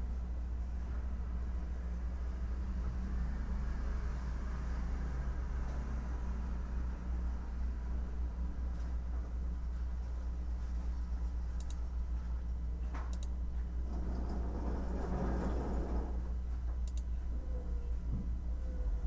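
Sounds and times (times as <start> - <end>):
steady low hum: 6.1 - 19.0
computer keyboard keystrokes: 13.1 - 13.3, 16.8 - 17.1.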